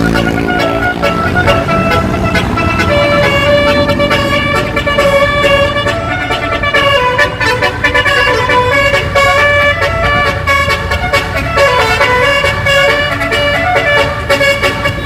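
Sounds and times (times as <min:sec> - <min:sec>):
bus air horn melody: 0:00.0 - 0:15.0
low rumble: 0:01.1 - 0:07.1.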